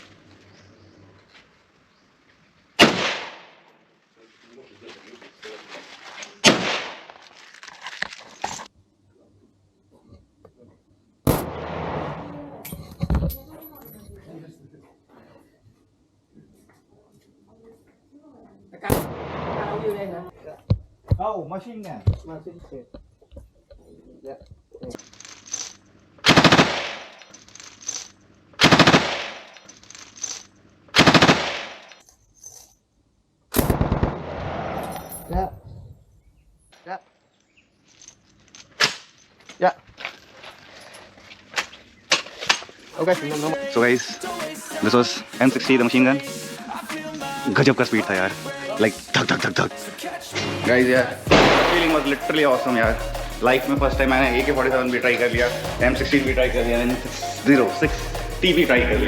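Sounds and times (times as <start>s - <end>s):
rifle shot with echo: 2.8s - 3.6s, 6.4s - 7.2s, 11.3s - 12.6s, 18.9s - 19.9s, 26.3s - 27.1s, 28.6s - 29.5s, 33.6s - 35.0s, 51.3s - 52.1s
machine gun bursts: 26.3s - 27.2s, 28.6s - 29.5s, 31.0s - 31.8s.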